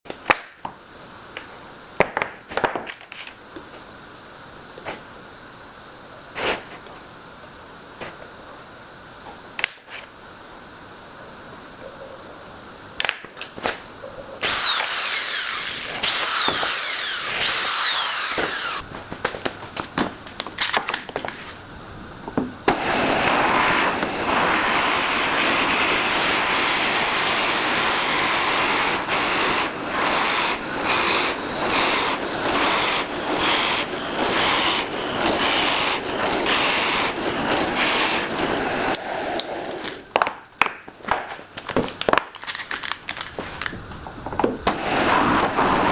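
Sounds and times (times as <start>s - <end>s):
power tool working wood: 14.4s - 18.9s, 22.7s - 40.0s, 44.6s - 45.9s.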